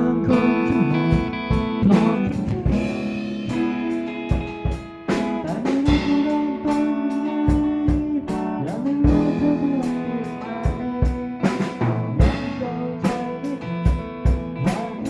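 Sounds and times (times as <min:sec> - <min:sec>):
guitar with sliding notes: 0:00.0 - 0:15.0
drum hits: 0:00.4 - 0:06.4.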